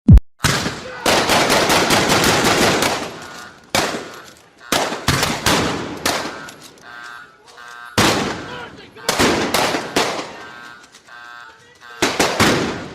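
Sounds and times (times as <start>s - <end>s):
echoing gunshots: 0.4s - 6.8s, 8.0s - 10.8s, 12.0s - 12.9s
rapid automatic gunfire: 0.5s - 6.6s, 8.0s - 10.5s, 12.0s - 12.9s.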